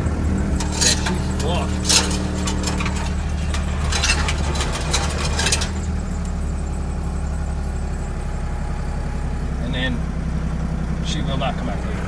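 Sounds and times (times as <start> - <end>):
sharp clicks and rattles: 0.3 - 6.5.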